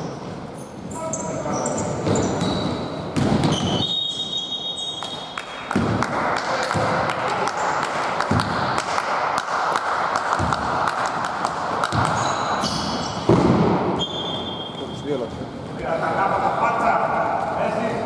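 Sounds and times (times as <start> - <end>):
voices in a large hall: 0.0 - 18.0
basketball bouncing on gym floor: 2.0 - 4.0, 5.7 - 7.1, 8.2 - 8.9, 10.1 - 14.4.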